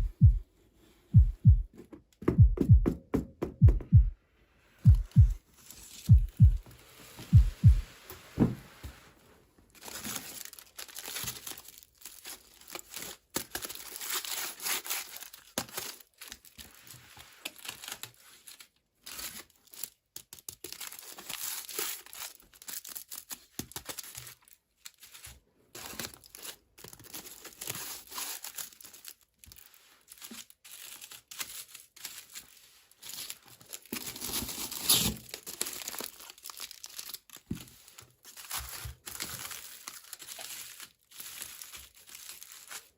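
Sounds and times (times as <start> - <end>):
packaging crinkling and tearing: 9.7 - 42.9.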